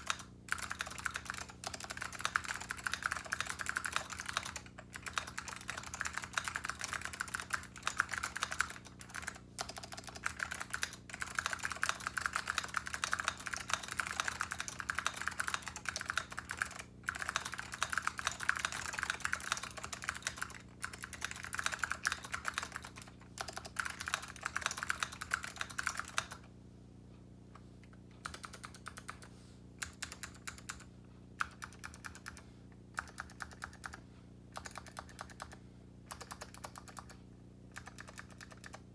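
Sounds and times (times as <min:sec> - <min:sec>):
mechanical keyboard typing: 0:00.0 - 0:26.5, 0:28.2 - 0:38.8.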